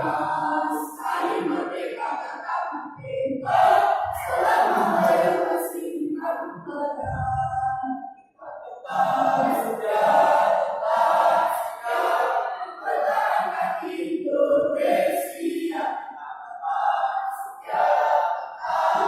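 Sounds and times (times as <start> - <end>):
choir singing: 0.0 - 19.0.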